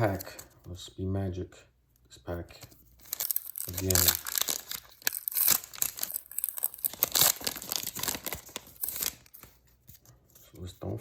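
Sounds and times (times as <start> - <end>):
foil wrapper crinkling and tearing: 3.0 - 9.4.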